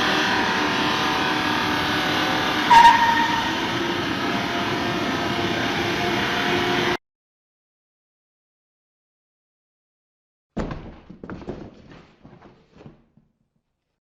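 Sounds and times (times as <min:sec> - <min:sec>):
short ringing tone: 0:02.7 - 0:03.8.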